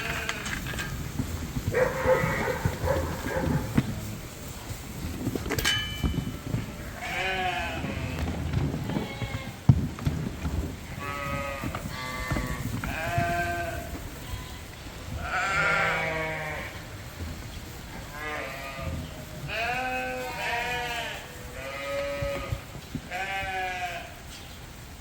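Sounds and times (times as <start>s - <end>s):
lambs bleating: 6.9s - 9.7s, 10.8s - 16.8s, 17.9s - 24.2s.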